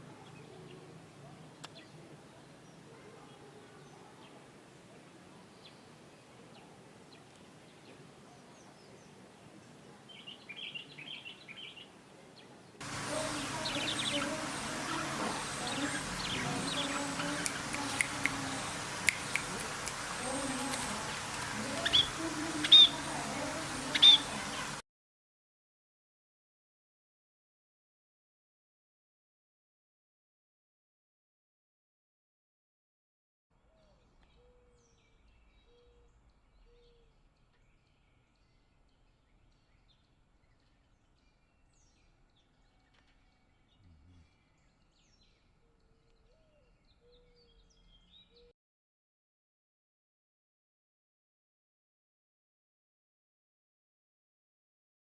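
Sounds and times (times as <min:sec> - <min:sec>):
birds chirping: 0:00.1 - 0:24.8, 0:33.7 - 0:48.5
high bird chirps: 0:13.1 - 0:24.8.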